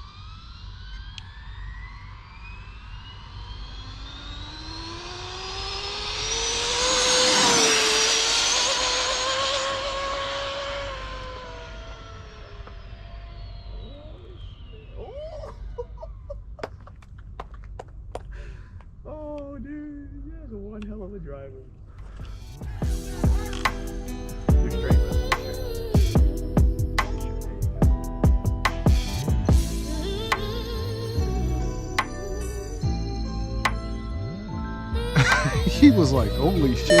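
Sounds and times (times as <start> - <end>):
electric rc car motor whine: 0.0 - 15.1.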